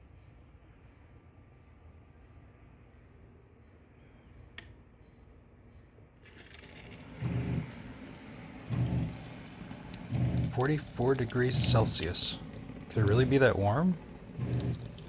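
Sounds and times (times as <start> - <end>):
water running from faucet: 6.3 - 15.0.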